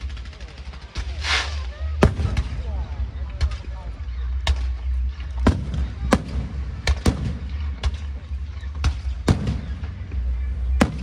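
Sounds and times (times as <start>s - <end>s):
fireworks bangs: 1.0s - 3.0s, 5.5s - 8.2s, 8.8s - 11.0s.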